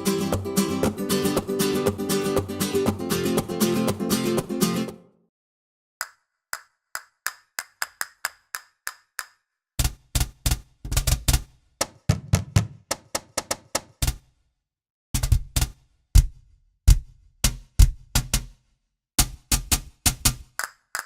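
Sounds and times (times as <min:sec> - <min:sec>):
percussion strikes with deep thump: 0:09.8 - 0:14.2, 0:15.2 - 0:18.6, 0:19.2 - 0:20.5.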